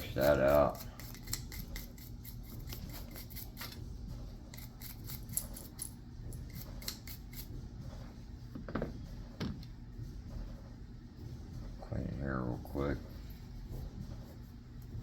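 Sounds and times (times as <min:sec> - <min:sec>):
brush scrubbing pistol barrel: 0:00.0 - 0:03.8.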